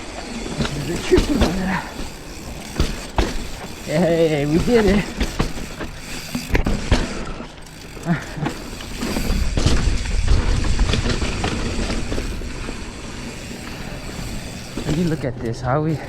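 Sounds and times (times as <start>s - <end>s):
bike rattling and clicking: 0.0s - 16.0s
bike tyre noise on dirt: 0.0s - 16.0s
wind rumbling on microphone: 9.2s - 13.1s.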